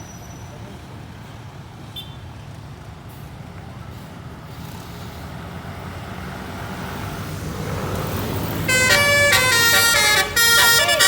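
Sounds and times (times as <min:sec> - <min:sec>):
bus engine and road noise: 0:00.0 - 0:11.0
multi-tone musical air horn: 0:08.7 - 0:11.0.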